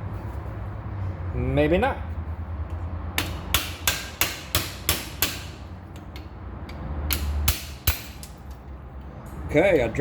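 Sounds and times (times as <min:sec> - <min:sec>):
hammer striking metal: 0:03.2 - 0:08.4.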